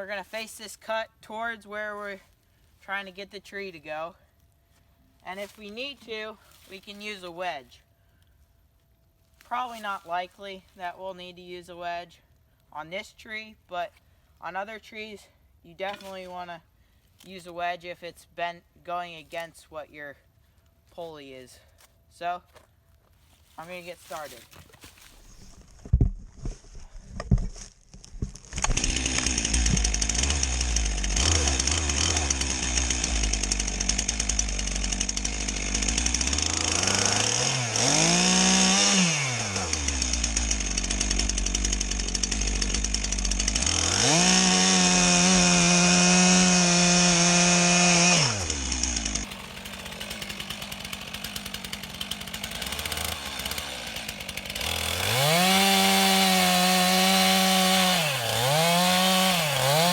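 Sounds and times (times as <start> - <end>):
chainsaw revving: 28.2 - 59.9.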